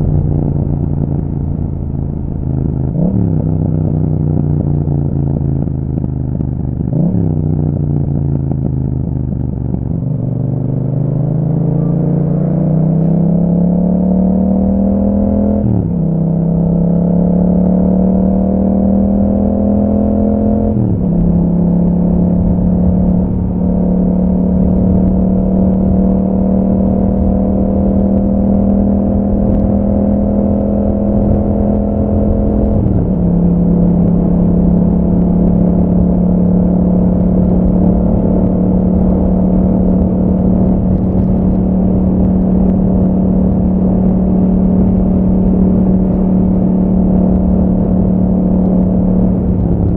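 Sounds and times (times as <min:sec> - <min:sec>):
motorcycle engine running: 0:00.0 - 0:49.9.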